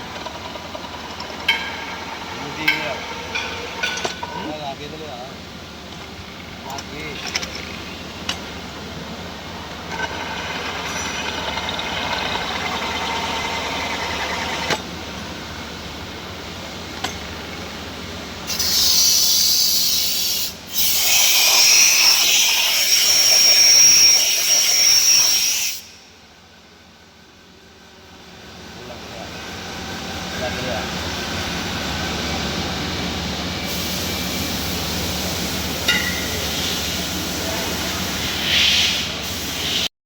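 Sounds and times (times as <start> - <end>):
metal machining noise: 0.0 - 4.8, 9.8 - 14.8, 18.5 - 25.9, 33.7 - 39.9
loud hiss: 18.5 - 26.0, 33.7 - 39.9.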